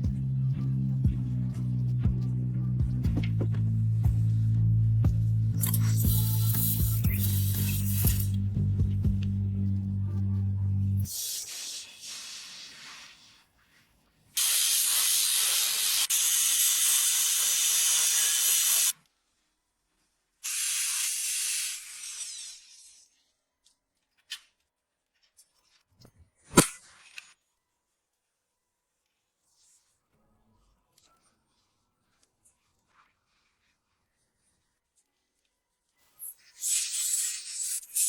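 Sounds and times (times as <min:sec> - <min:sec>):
hissing spray: 0:05.6 - 0:08.4, 0:11.1 - 0:13.4, 0:14.4 - 0:18.9, 0:20.4 - 0:23.1, 0:36.2 - 0:38.0.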